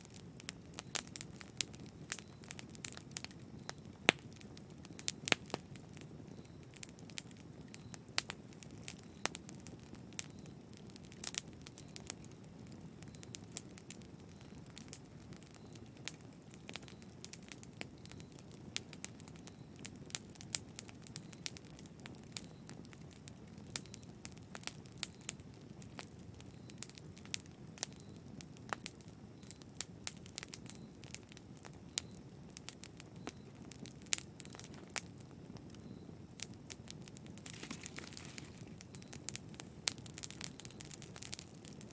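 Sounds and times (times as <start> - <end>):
low rumble of flames: 0.0 - 41.9
wood fire pops and snaps: 0.1 - 23.2, 36.4 - 41.9.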